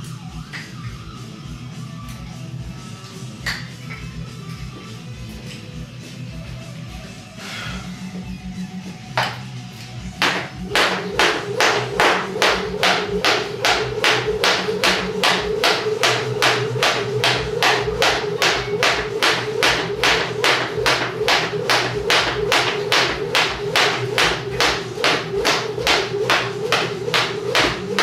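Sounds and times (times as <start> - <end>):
jump rope slapping floor: 10.2 - 28.0.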